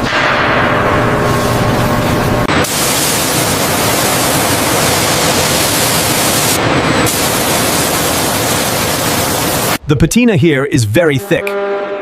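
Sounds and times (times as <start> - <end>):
loud hissing rush of noise: 1.4 - 9.8.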